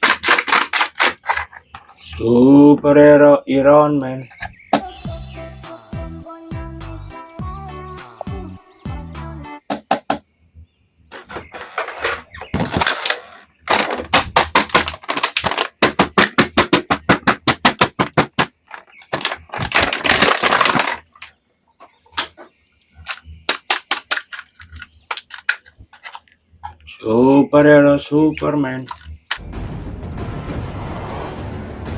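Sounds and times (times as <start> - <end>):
sharp clicks and crackles: 0.0 - 2.2, 11.1 - 21.4, 23.0 - 26.9, 28.8 - 29.4.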